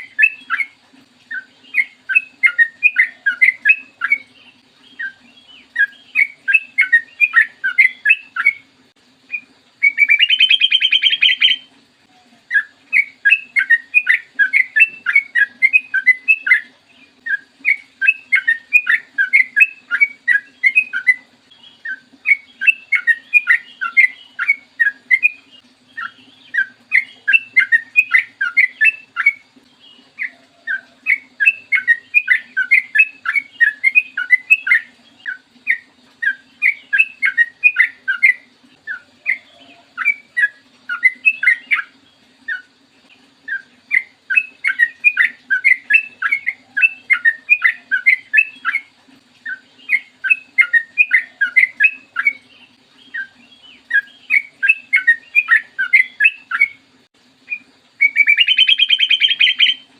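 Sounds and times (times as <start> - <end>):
bird chirping: 0.0 - 59.9
harsh buzzing bird call: 58.0 - 59.9.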